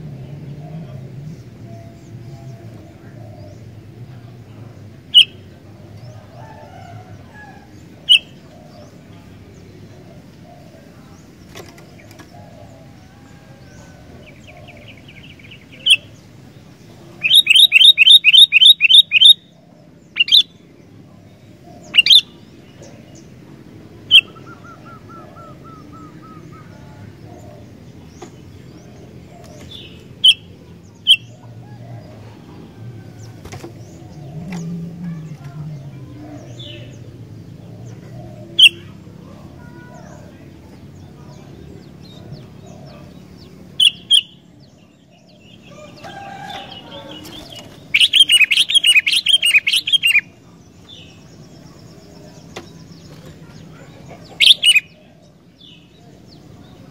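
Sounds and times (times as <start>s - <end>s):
low background murmur: 0.0s - 56.9s
bird chirping and trilling: 5.1s - 5.4s, 16.9s - 20.7s, 21.8s - 22.4s, 24.1s - 27.1s, 29.6s - 31.4s, 37.9s - 40.2s, 42.8s - 55.9s.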